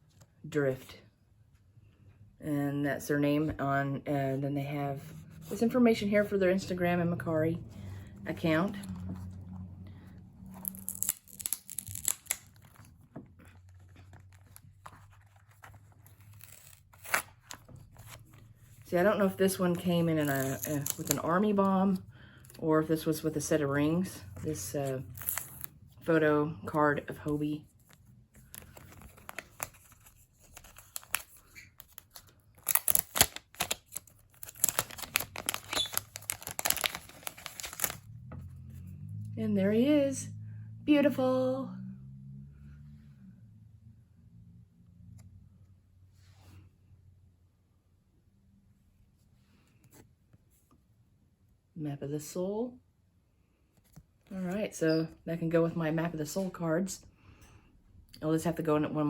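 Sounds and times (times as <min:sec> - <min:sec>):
packaging crinkling and rustling: 0:10.4 - 0:18.9, 0:20.2 - 0:21.3, 0:27.7 - 0:38.1.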